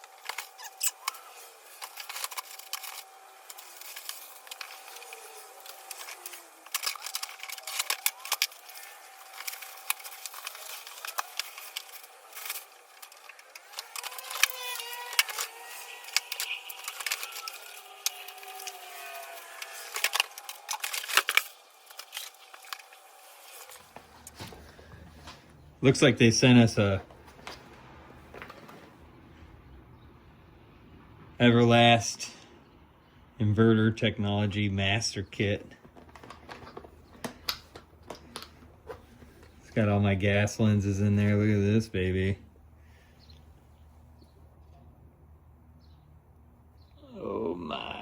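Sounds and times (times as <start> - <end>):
cardboard box being opened: 23.5 - 25.5.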